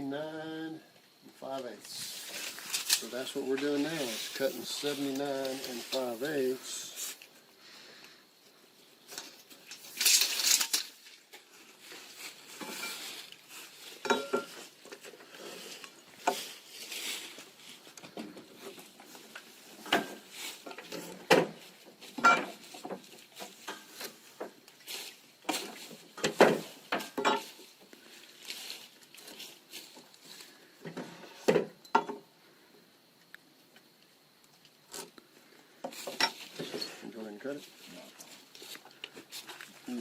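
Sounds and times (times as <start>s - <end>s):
lumber and tools clattering: 9.1s - 16.5s, 18.0s - 24.7s, 25.5s - 27.8s, 30.8s - 32.3s, 35.9s - 37.0s.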